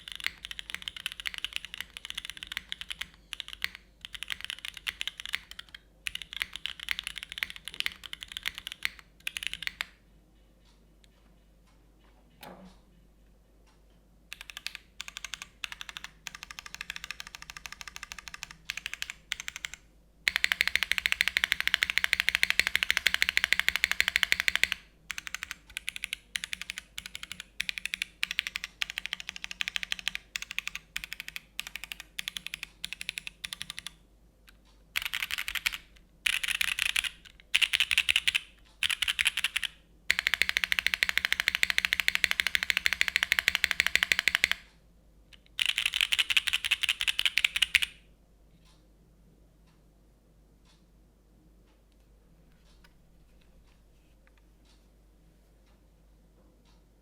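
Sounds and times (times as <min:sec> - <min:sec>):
mechanical keyboard typing: 0:00.0 - 0:10.0, 0:14.3 - 0:44.7, 0:45.4 - 0:48.0.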